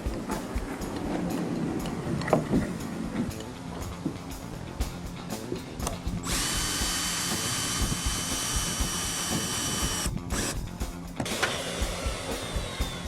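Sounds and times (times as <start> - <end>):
cordless drill whining: 6.3 - 10.6, 11.2 - 13.0
screw driven into wood: 6.3 - 10.6, 11.2 - 13.0.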